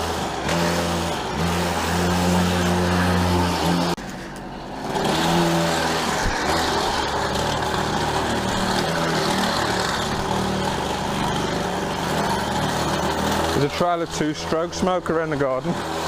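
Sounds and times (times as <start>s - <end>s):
scooter two-stroke engine running: 0.0s - 16.0s.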